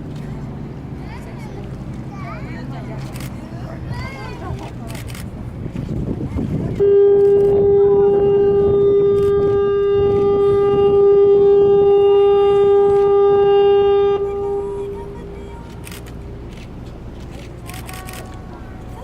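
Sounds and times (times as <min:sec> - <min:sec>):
ship's horn blast: 0:06.7 - 0:16.4.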